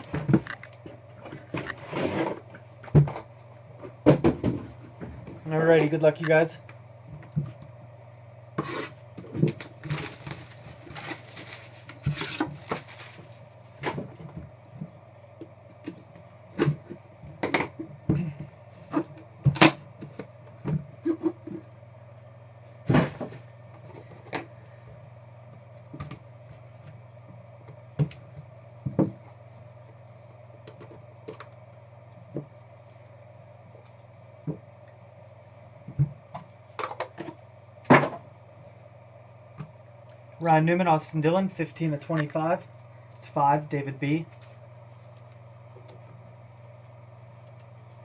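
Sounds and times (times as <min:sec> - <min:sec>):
low hum: 0:00.0 - 0:48.0
packaging rustling and tearing: 0:09.5 - 0:13.7.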